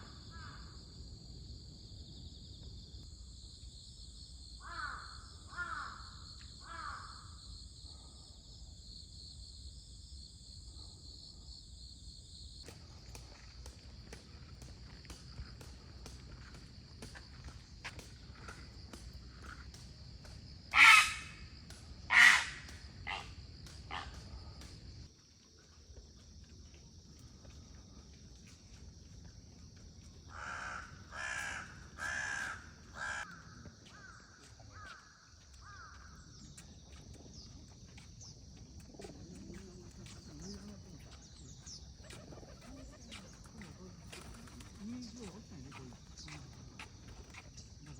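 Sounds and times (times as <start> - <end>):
crows cawing: 0.0 - 0.8, 4.6 - 7.4, 20.7 - 21.4, 22.1 - 23.3, 23.9 - 24.2, 30.3 - 36.2.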